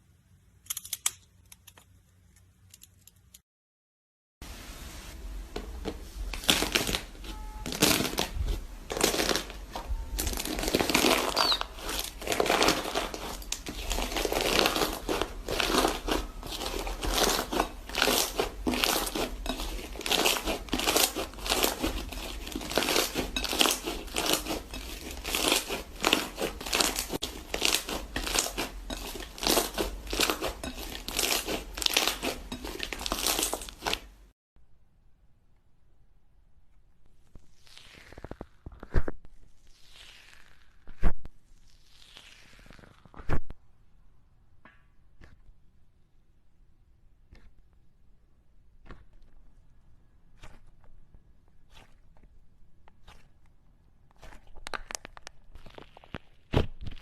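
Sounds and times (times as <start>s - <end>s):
crunchy material crinkling: 6.3s - 34.2s, 54.2s - 57.0s.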